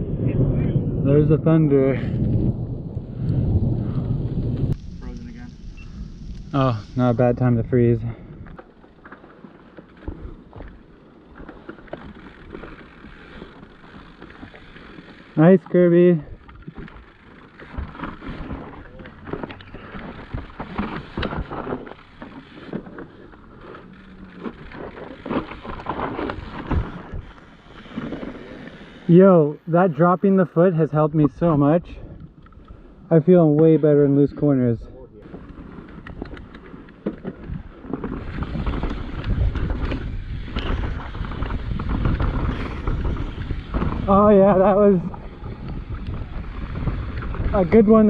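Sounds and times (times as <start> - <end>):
wind noise on microphone: 0.0 - 8.6, 17.6 - 29.9, 34.8 - 48.0
bike tyres crunching on dirt: 3.2 - 34.6, 35.2 - 48.0
bike clattering and rattling: 7.7 - 30.1, 35.2 - 48.0.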